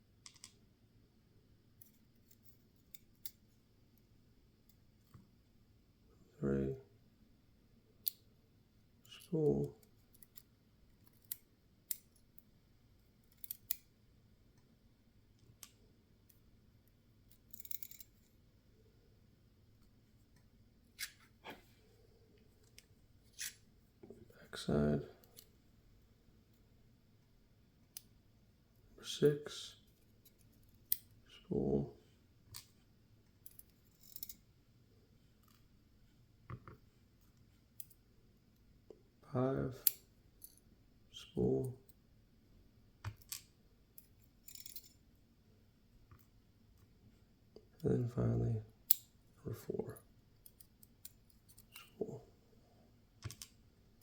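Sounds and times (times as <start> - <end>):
small lock parts clicking: 0.2 - 0.6, 1.8 - 3.4, 9.8 - 12.5, 13.1 - 13.9, 17.3 - 18.3, 21.0 - 21.2, 22.7 - 23.6, 33.4 - 34.4, 43.0 - 45.0, 50.4 - 51.9
small metallic clicks and taps: 0.2 - 0.6, 53.2 - 53.6.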